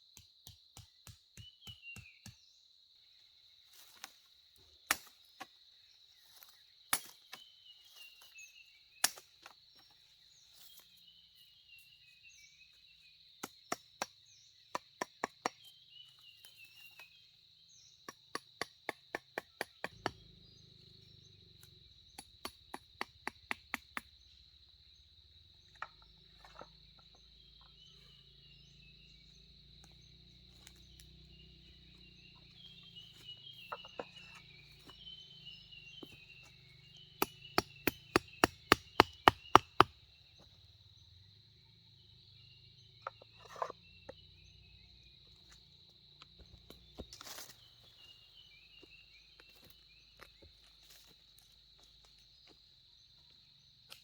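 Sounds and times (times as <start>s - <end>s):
bird chirps: 1.4s - 2.6s, 5.8s - 18.8s, 19.4s - 45.7s, 46.4s - 51.5s
sharp chopping strikes: 37.2s - 39.9s.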